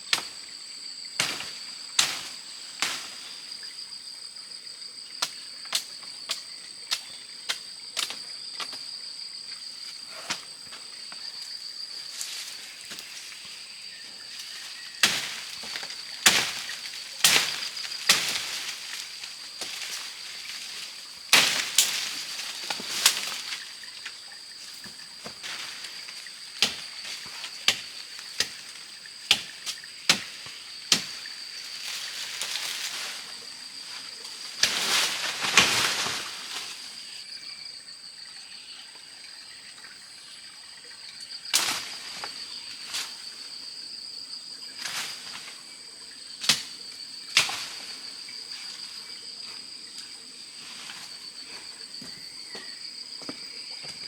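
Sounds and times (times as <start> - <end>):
insect drone: 0.0 - 54.0
sharp knocks and snaps: 26.6 - 31.2
loud rustle: 34.3 - 37.0.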